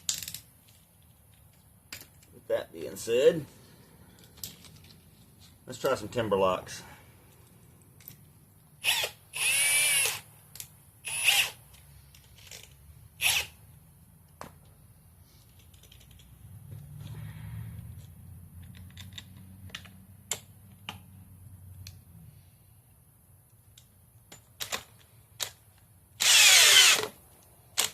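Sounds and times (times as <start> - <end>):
hammer drill motor whine: 8.8 - 10.3, 11.0 - 11.6, 13.2 - 13.6, 26.2 - 27.1.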